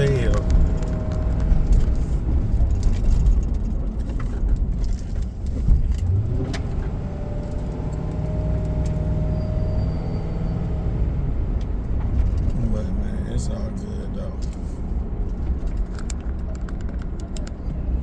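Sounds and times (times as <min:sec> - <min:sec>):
road and engine rumble in car: 0:00.0 - 0:18.0
light clicks and rattles: 0:14.4 - 0:17.7.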